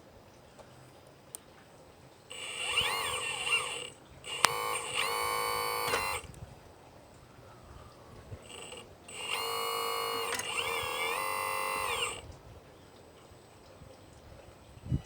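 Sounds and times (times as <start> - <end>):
click: 2.3 - 6.4, 8.4 - 12.3
electric motor whining: 2.3 - 6.4, 8.3 - 12.3.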